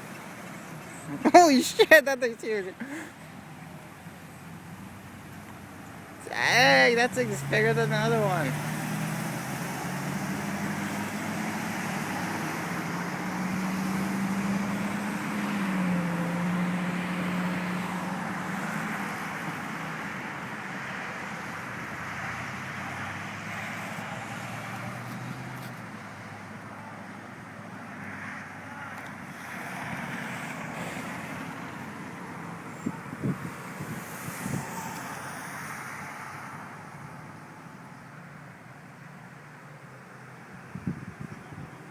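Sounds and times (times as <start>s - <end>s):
truck engine running: 0.0s - 22.0s.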